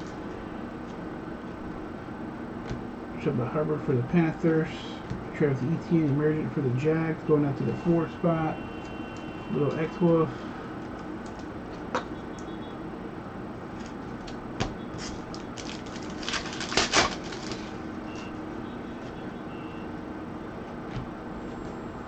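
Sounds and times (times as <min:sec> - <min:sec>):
room hum: 0:00.0 - 0:22.0
trading cards rustling and flicking: 0:13.7 - 0:18.3.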